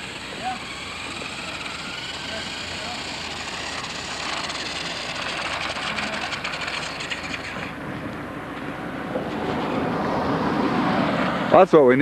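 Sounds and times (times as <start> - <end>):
remote-control car motor whirring: 0.0 - 7.8.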